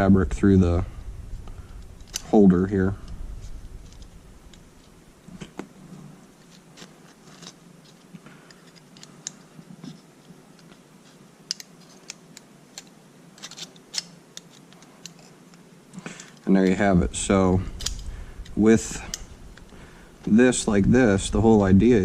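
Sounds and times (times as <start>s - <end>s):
strap handling clicks and rustling: 1.8s - 2.4s, 3.0s - 5.8s, 6.4s - 16.8s, 17.7s - 20.4s.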